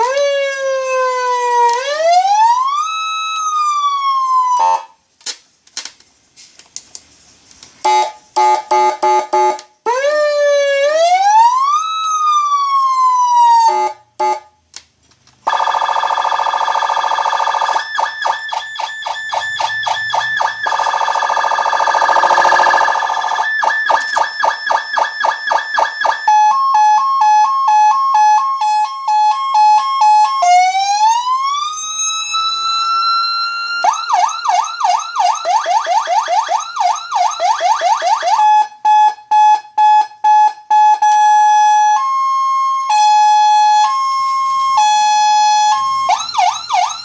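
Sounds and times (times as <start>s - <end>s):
electronic siren tones: 15.5s - 39.2s, 39.8s - 47.0s
harsh multi-tone alarm: 15.5s - 47.0s.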